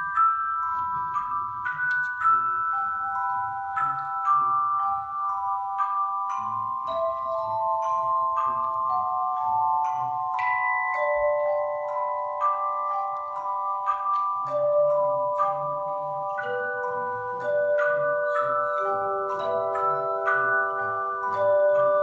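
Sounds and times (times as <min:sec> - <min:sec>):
handbell choir playing: 0:00.0 - 0:22.0.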